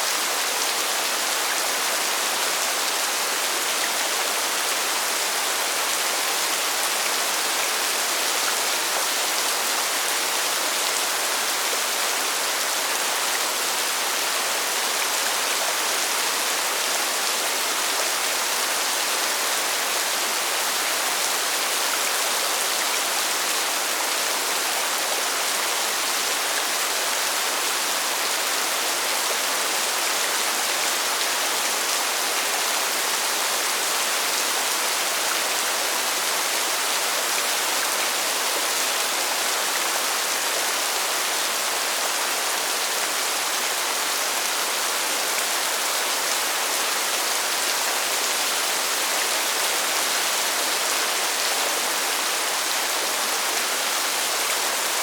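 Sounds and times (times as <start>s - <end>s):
steady rainfall hiss: 0.0s - 55.0s.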